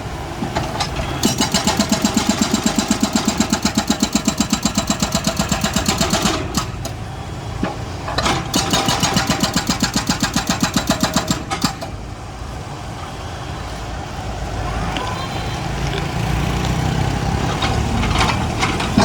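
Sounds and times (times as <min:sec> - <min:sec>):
excavator engine running: 0:00.1 - 0:14.5.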